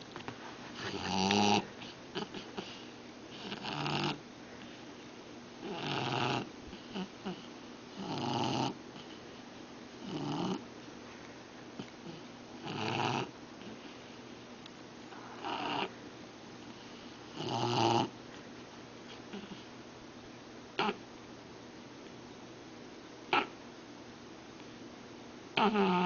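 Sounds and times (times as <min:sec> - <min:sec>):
dog snoring: 0:00.8 - 0:04.8, 0:05.6 - 0:09.2, 0:10.0 - 0:10.6, 0:11.8 - 0:13.9, 0:15.1 - 0:16.0, 0:16.7 - 0:18.2, 0:19.1 - 0:19.7, 0:20.8 - 0:21.0, 0:23.3 - 0:23.6, 0:25.6 - 0:26.0.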